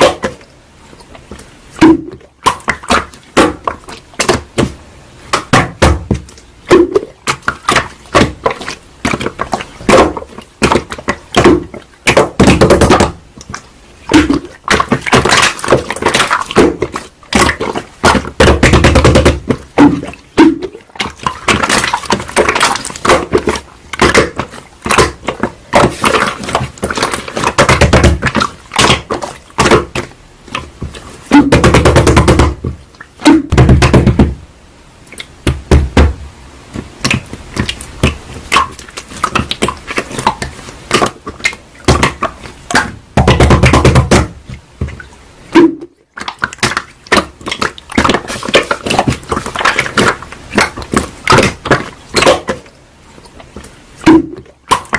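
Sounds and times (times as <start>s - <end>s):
slime squelching by hand: 6.1s - 31.7s, 44.2s - 54.9s.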